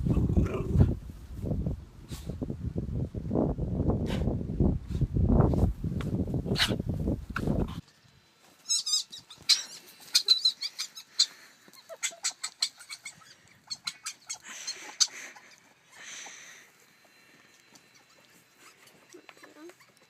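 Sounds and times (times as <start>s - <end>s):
pet animal squeaking: 8.7s - 15.6s.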